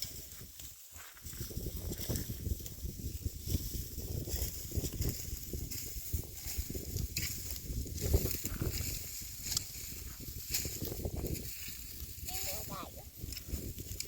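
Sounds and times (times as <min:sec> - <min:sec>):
dry rustling and crackling: 0:00.0 - 0:14.0
wind rumble on microphone: 0:00.0 - 0:14.0.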